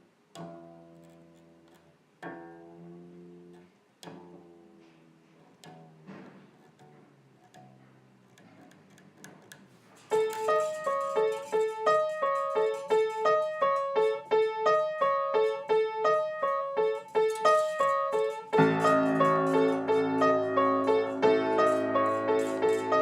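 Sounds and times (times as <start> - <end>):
piano repeating single notes: 10.1 - 23.0.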